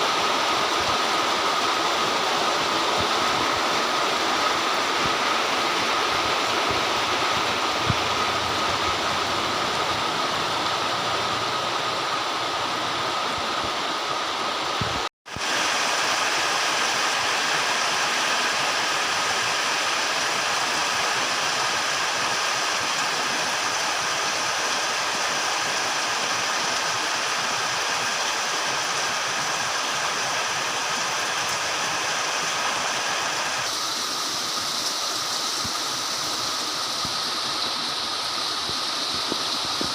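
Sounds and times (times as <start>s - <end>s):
torrential rain hissing: 0.0s - 39.9s.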